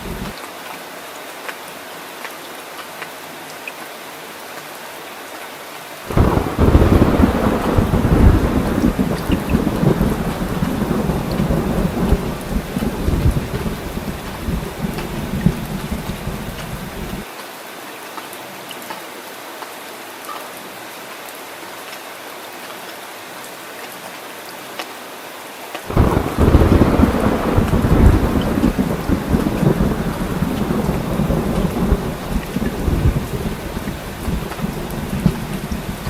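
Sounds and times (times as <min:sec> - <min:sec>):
thunder rumbling: 0:00.0 - 0:00.3, 0:06.1 - 0:17.2, 0:25.9 - 0:36.0
heavy rain hissing: 0:00.0 - 0:00.4, 0:06.0 - 0:17.3, 0:25.9 - 0:36.0.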